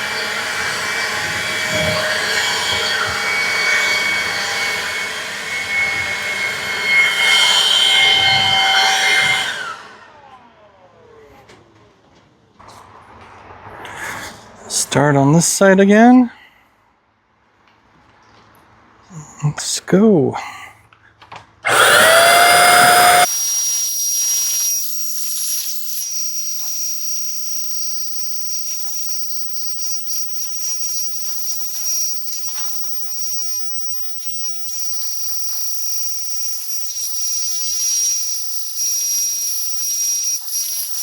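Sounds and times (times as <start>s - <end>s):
electric paint sprayer whining: 0.0s - 11.2s, 21.6s - 41.0s.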